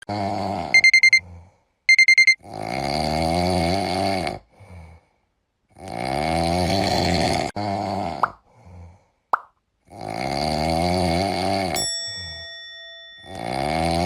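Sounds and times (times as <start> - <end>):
alarm clock beeping: 0.8 - 1.2, 1.9 - 2.4.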